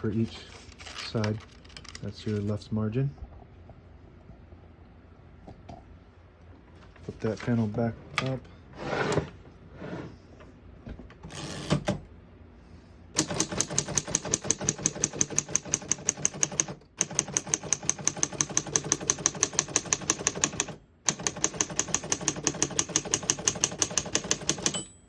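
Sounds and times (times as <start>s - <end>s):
short scrape: 8.8s - 10.2s
typewriter keys striking: 13.2s - 24.9s.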